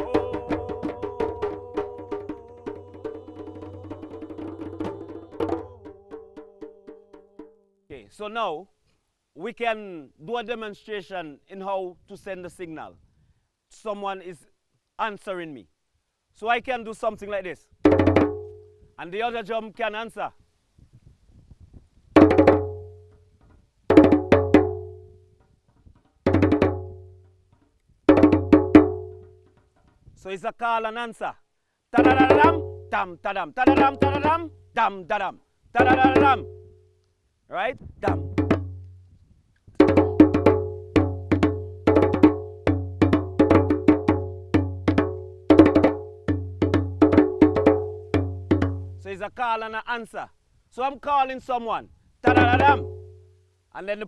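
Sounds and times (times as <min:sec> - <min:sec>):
hand drums call and answer: 0:00.0 - 0:07.6, 0:17.9 - 0:18.6, 0:22.2 - 0:23.2, 0:23.9 - 0:25.1, 0:26.2 - 0:27.4, 0:28.1 - 0:29.7, 0:32.0 - 0:34.6, 0:35.8 - 0:36.7, 0:38.0 - 0:39.0, 0:39.8 - 0:49.0, 0:52.3 - 0:53.2.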